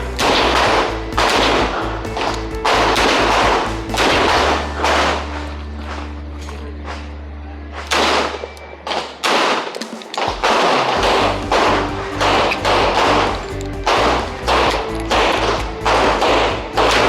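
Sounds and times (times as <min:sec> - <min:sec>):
revolver shots: 0:00.0 - 0:05.5
held bass note: 0:00.0 - 0:08.5, 0:11.0 - 0:17.0
background music: 0:00.0 - 0:17.0.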